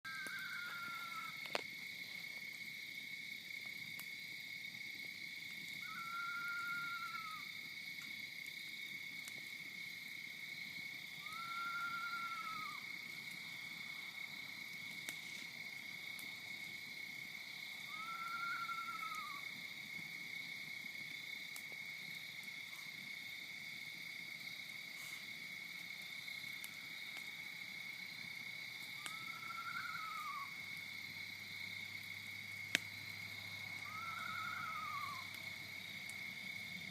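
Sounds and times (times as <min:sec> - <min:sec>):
animal call: 0:00.1 - 0:01.5, 0:05.8 - 0:07.5, 0:11.2 - 0:13.0, 0:17.8 - 0:19.5, 0:29.0 - 0:30.6, 0:33.7 - 0:35.4.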